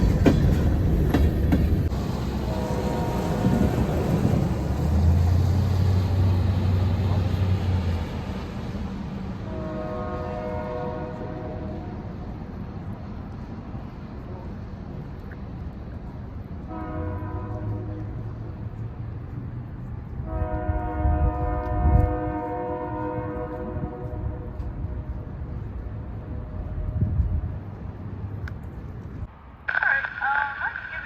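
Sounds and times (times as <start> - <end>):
low rumble of passing train: 0.0 - 31.0
locomotive air horn blasts: 2.4 - 3.8, 9.4 - 12.1, 16.7 - 18.1, 20.2 - 24.6.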